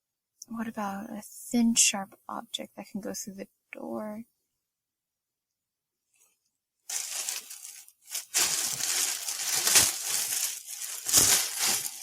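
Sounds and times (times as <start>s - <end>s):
bag rustling and crinkling: 6.9s - 12.0s.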